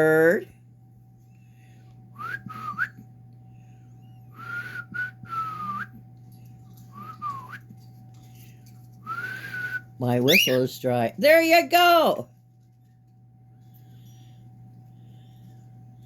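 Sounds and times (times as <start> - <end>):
person whistling: 2.2 - 3.0, 4.4 - 5.9, 7.0 - 7.6.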